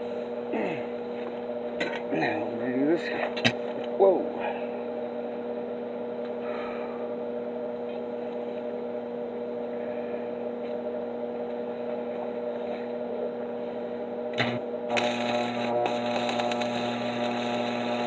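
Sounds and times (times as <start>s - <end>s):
welder humming: 13.6s - 18.0s
welding arc hiss: 14.4s - 18.0s.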